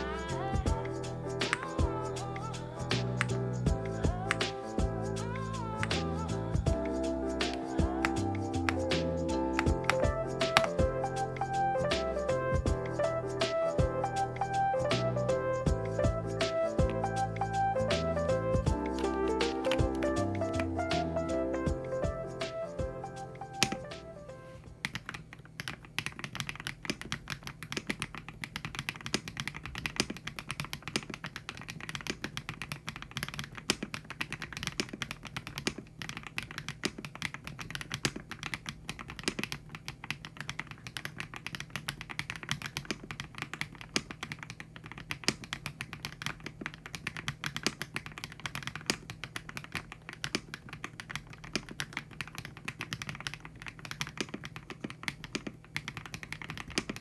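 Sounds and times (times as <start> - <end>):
mechanical keyboard typing: 0.0 - 3.4, 4.0 - 11.9, 16.4 - 24.1, 24.8 - 57.0.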